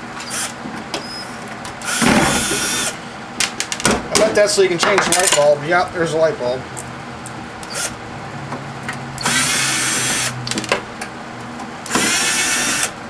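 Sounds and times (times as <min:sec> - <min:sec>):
power drill running: 0:00.0 - 0:03.0, 0:07.6 - 0:08.0, 0:09.2 - 0:10.4, 0:11.8 - 0:13.0.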